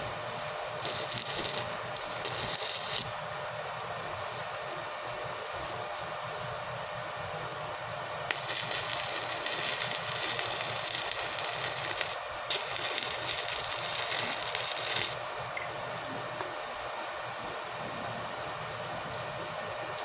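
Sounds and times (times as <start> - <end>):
steady machine hum: 0.0 - 20.0
welding arc crackling and sizzling: 0.4 - 3.5, 8.3 - 15.3.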